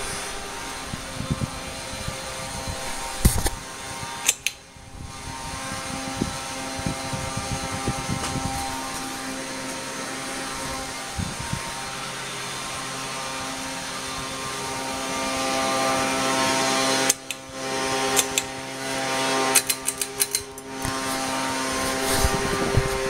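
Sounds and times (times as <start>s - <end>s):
rush of air: 0.0s - 9.3s, 20.9s - 23.0s
ceiling fan motor humming: 0.0s - 23.0s
sharp clicks and ticks: 4.2s - 4.6s, 17.1s - 17.4s, 18.2s - 18.5s, 19.5s - 20.9s.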